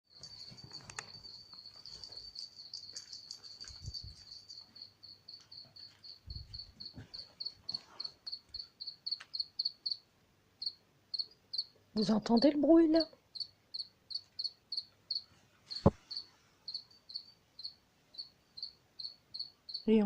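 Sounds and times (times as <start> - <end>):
high thin chirping: 0.1 - 5.0.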